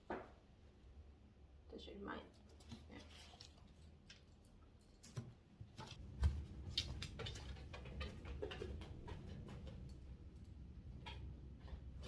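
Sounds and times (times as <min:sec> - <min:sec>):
dog claws clicking on floor: 0:02.6 - 0:11.9.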